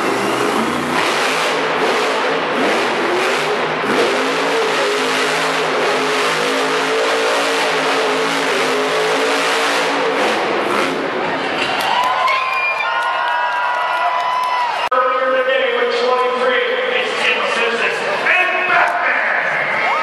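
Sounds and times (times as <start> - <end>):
truck engine revving: 0.0 - 11.8.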